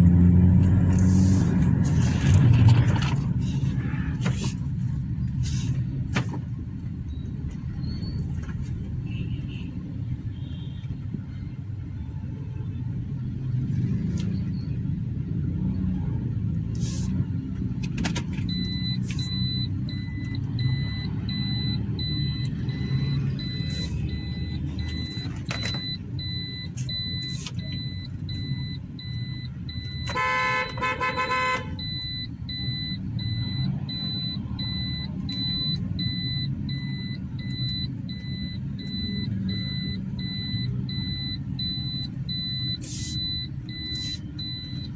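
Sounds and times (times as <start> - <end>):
car engine and road rumble: 0.0 - 44.9
high electronic beeps: 18.5 - 30.2, 31.8 - 44.9
car horn honking: 30.0 - 32.0.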